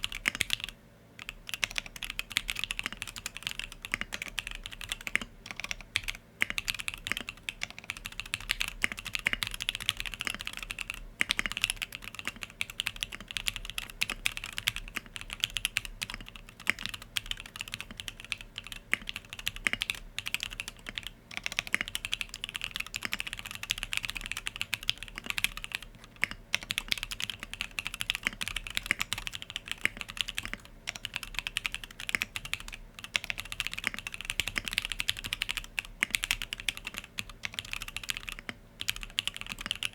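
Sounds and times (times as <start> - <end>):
mechanical keyboard typing: 0.0 - 39.9.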